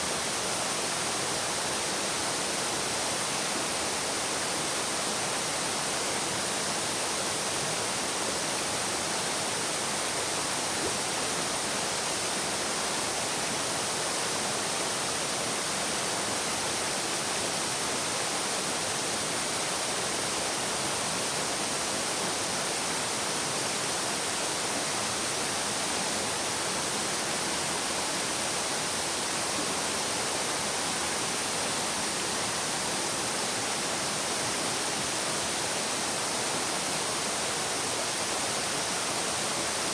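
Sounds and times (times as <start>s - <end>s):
shallow stream babbling: 0.0s - 39.9s.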